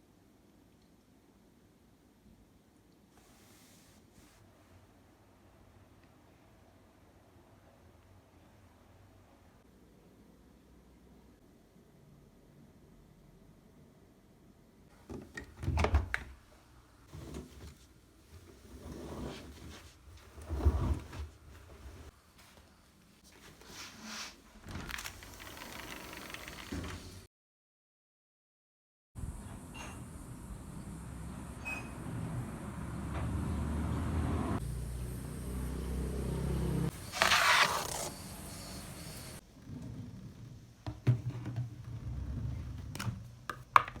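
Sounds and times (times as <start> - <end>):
vehicle engine rumble: 30.3 - 36.9.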